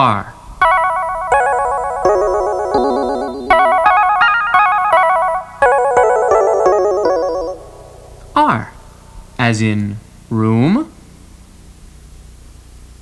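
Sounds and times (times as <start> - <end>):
electronic keyboard tune: 0.6 - 8.6.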